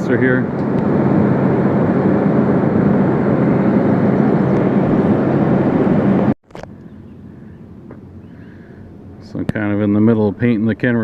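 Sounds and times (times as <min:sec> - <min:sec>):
heavy machine engine running: 0:00.0 - 0:10.1
faint background hum: 0:06.6 - 0:11.0.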